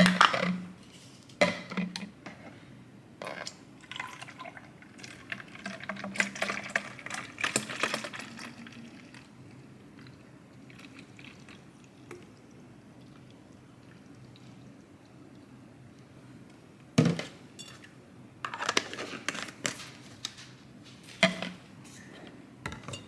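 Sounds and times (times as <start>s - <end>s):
liquid pouring and dripping: 3.8s - 16.1s.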